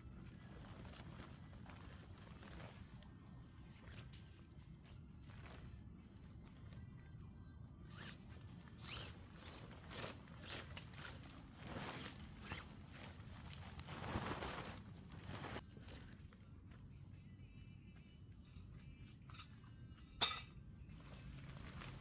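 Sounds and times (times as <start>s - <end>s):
zipper being pulled: 7.9s - 15.6s.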